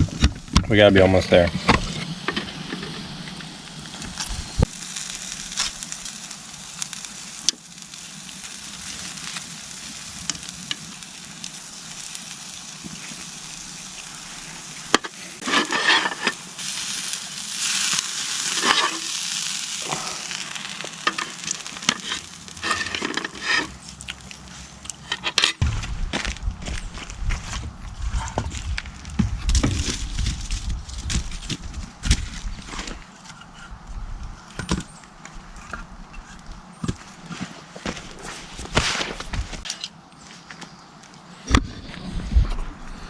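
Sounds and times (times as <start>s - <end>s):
steak sizzling in a pan: 1.8s - 24.5s.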